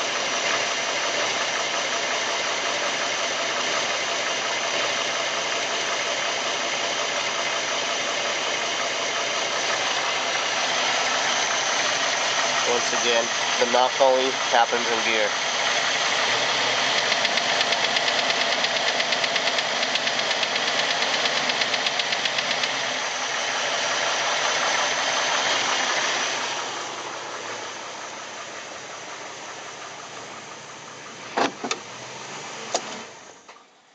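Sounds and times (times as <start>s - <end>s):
rapid engine knocking: 0.0s - 27.7s
engine running: 0.0s - 33.9s
sharp clicks: 17.0s - 22.8s.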